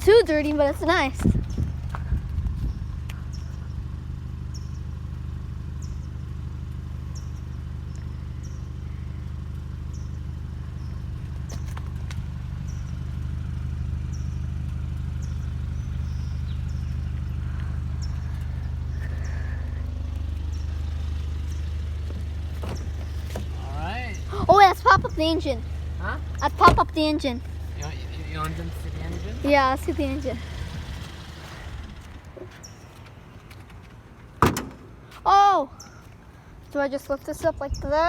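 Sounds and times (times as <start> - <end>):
car engine idling: 0.0 - 38.0.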